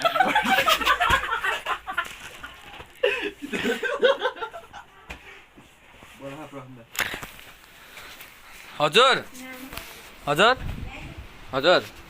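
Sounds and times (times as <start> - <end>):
people laughing: 0.0 - 5.1.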